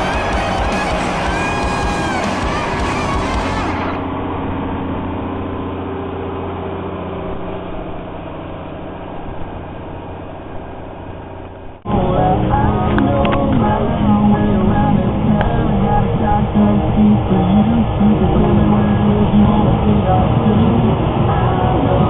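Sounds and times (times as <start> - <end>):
machine engine humming: 0.0 - 11.3.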